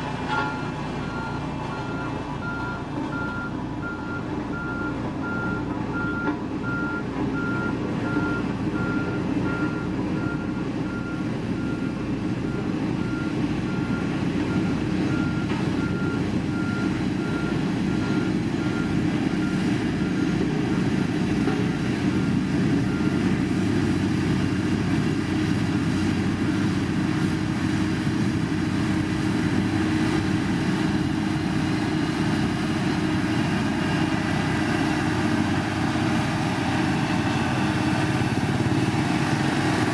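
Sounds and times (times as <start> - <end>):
diesel engine running: 0.0 - 39.9
reversing alarm beeping: 0.3 - 21.1.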